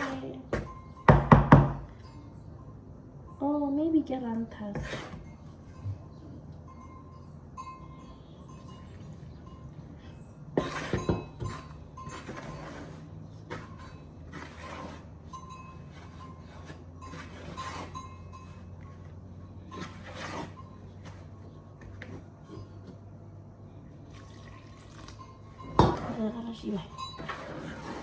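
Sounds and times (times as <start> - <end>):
low steady hum: 0.0 - 28.0
kitchenware clinking: 4.8 - 19.0, 24.2 - 28.0.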